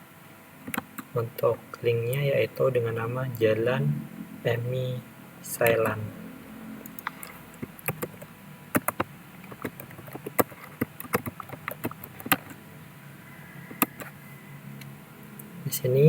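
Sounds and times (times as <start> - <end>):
faint steady hum: 0.0 - 16.0
keyboard keys clicking: 0.7 - 1.1, 5.6 - 6.0, 6.8 - 12.6, 13.7 - 14.2.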